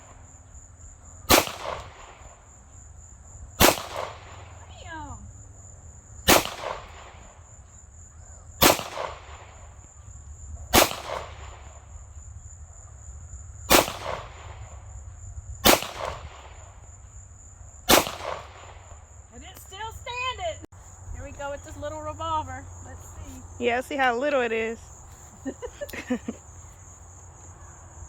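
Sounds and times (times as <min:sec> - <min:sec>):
gunshots with ringing echo: 0:01.3 - 0:02.3, 0:03.6 - 0:04.4, 0:06.3 - 0:07.3, 0:08.6 - 0:09.7, 0:10.7 - 0:11.8, 0:13.7 - 0:14.6, 0:15.6 - 0:16.7, 0:17.9 - 0:18.9.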